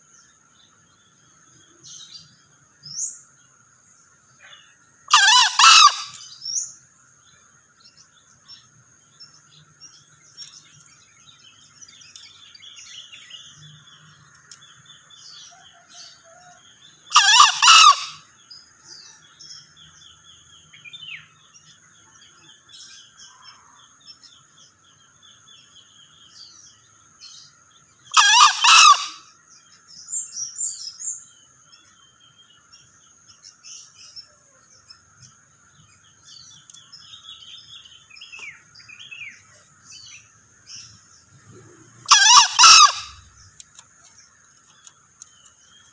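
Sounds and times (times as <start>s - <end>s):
junglefowl crowing: 4.5s - 6.2s, 15.3s - 18.3s, 28.1s - 29.3s, 42.0s - 43.3s
small bird chirps: 7.8s - 45.9s.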